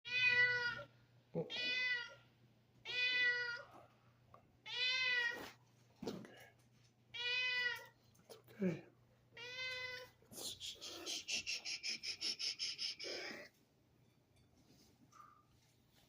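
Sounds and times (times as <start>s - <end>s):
cat meowing: 0.1s - 0.9s, 1.5s - 2.2s, 2.8s - 3.7s, 4.7s - 5.6s, 9.4s - 10.2s.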